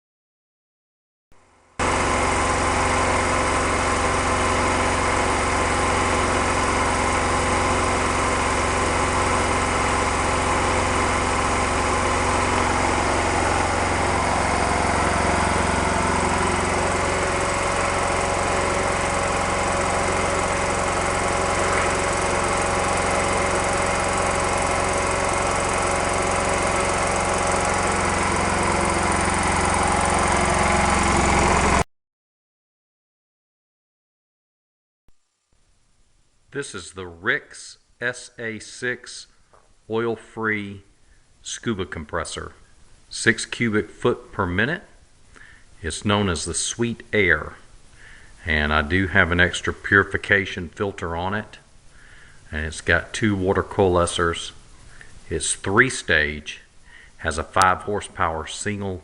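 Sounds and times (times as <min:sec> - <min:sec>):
air compressor running: 0:01.5 - 0:31.9, 0:45.0 - 0:45.8, 0:47.5 - 0:49.7, 0:51.7 - 0:52.6, 0:53.5 - 0:59.0.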